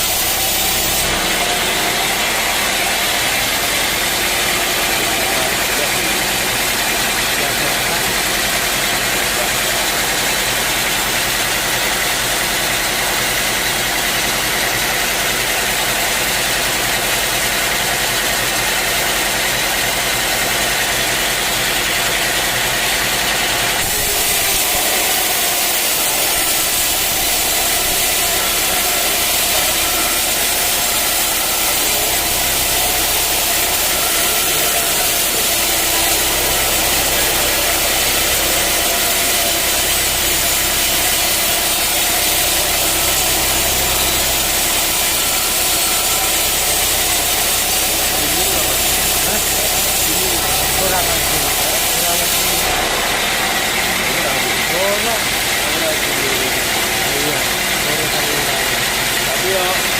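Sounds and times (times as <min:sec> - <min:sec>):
loud even hiss: 0:00.0 - 0:01.2, 0:23.8 - 0:52.8
engine hum: 0:20.4 - 0:59.4.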